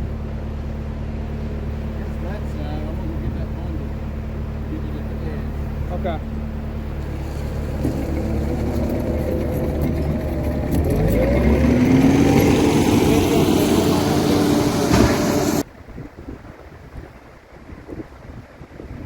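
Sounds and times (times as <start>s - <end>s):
vehicle engine revving: 6.5s - 15.7s.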